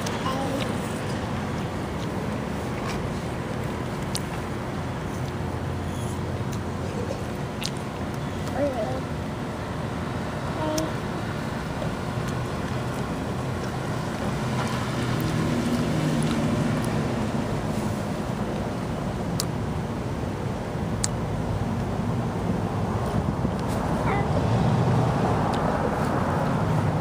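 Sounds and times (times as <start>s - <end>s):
engine hum: 0.0s - 27.0s
low vehicle rumble: 0.0s - 27.0s
car rumble inside cabin: 22.9s - 27.0s.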